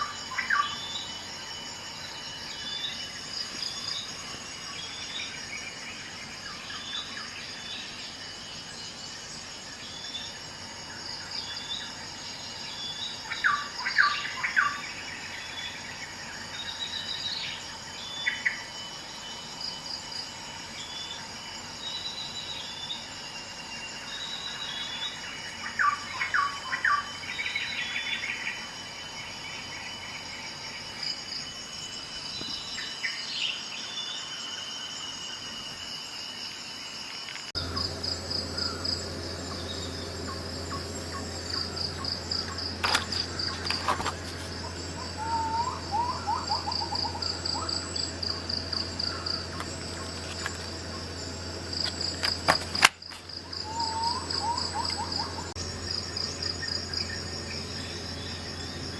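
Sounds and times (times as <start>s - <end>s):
insects trilling: 0.0s - 58.9s
birds chirping: 37.6s - 58.9s
steady low hum: 37.6s - 58.9s.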